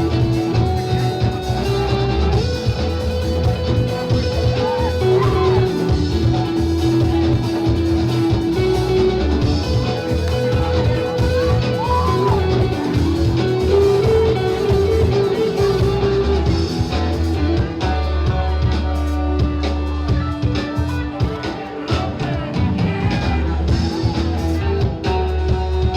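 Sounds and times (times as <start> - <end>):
rock music with guitar and bass: 0.0 - 25.9.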